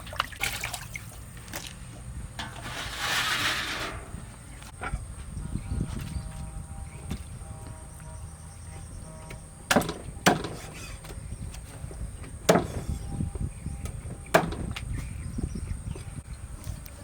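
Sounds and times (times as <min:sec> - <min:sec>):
sharp wooden knocks: 0:09.7 - 0:11.0, 0:12.2 - 0:13.0, 0:13.9 - 0:14.8.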